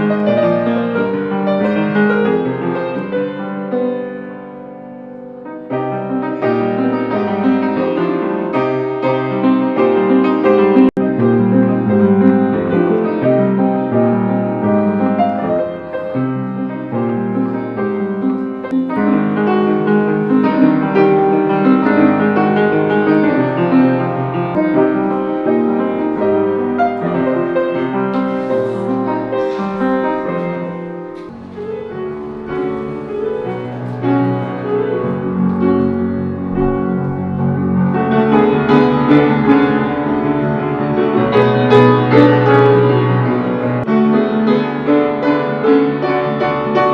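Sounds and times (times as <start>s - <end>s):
piano music: 0.0s - 46.9s.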